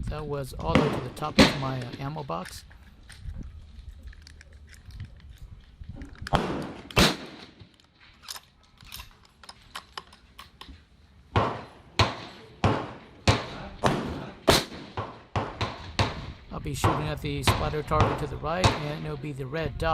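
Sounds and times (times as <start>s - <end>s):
gunshots with echoing tail: 0.6s - 2.1s, 6.3s - 7.6s, 11.3s - 19.0s
small clicks and knocks: 1.8s - 7.0s, 7.6s - 10.9s.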